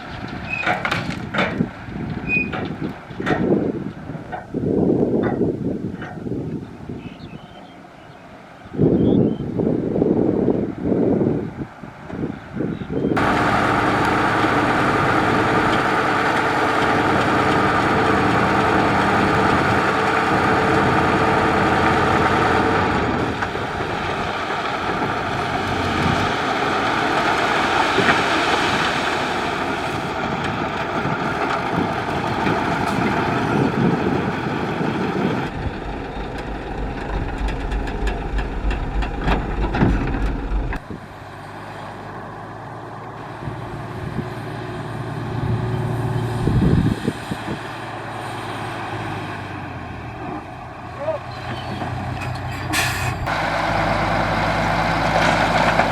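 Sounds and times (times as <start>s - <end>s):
construction machinery diesel engine: 11.0s - 55.9s
deep low rumble: 31.8s - 41.0s.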